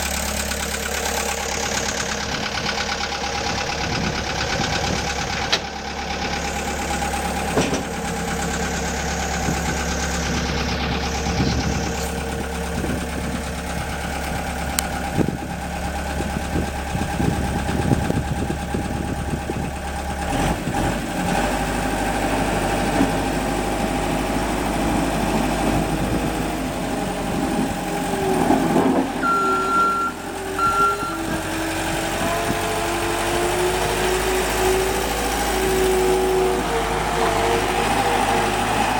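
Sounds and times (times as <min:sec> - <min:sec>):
skid steer engine running: 0:00.0 - 0:38.9
short high beeps: 0:29.2 - 0:31.2.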